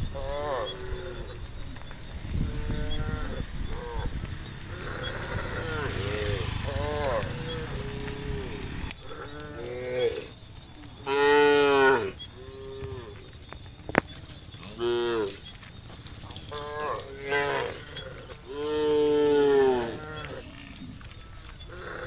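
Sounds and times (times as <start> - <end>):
cows mooing: 0.0 - 1.4, 2.4 - 10.3, 11.0 - 13.2, 14.6 - 15.4, 16.4 - 22.0.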